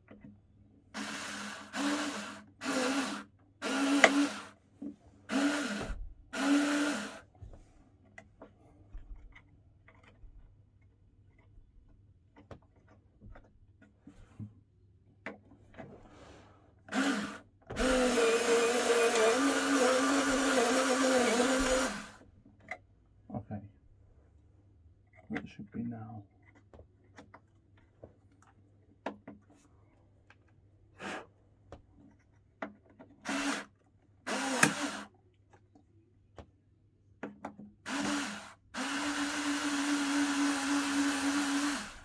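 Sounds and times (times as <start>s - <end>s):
power drill running: 1.0s - 4.6s, 5.3s - 7.2s, 16.9s - 22.2s, 33.3s - 33.7s, 34.3s - 35.1s, 37.9s - 42.0s.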